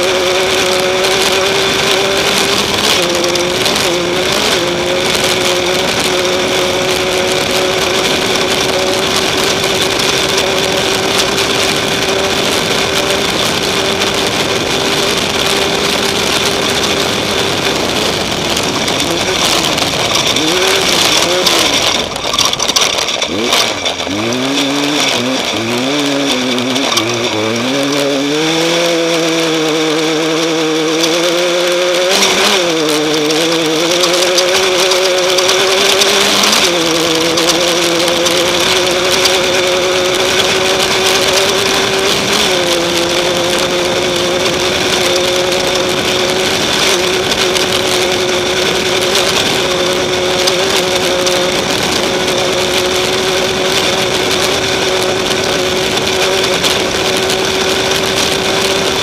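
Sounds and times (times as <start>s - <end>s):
dense rushing noise: 0.0s - 59.0s
race car engine revving: 0.0s - 59.0s.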